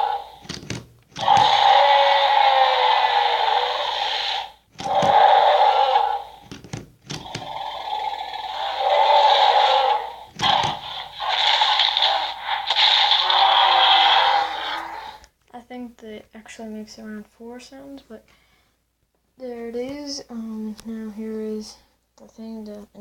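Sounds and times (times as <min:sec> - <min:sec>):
electronic toy dinosaur roars: 0:00.0 - 0:00.4, 0:01.2 - 0:06.5, 0:07.1 - 0:15.3.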